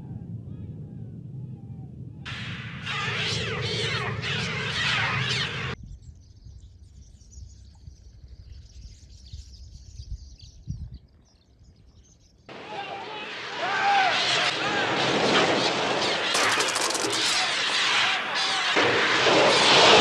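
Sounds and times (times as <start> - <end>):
high twittering of birds: 0.5 - 12.8.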